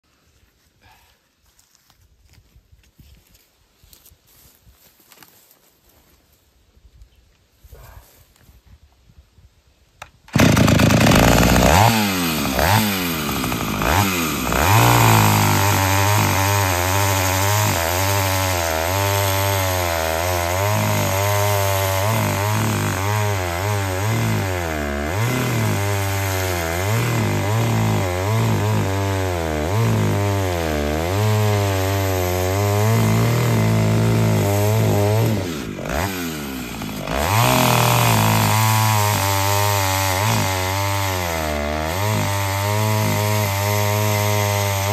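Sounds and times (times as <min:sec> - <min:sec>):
chainsaw revving: 0:10.3 - 0:44.9.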